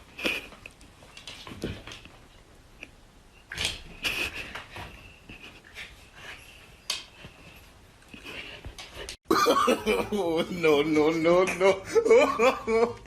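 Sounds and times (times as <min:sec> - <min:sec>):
person speaking: 0:09.6 - 0:13.0.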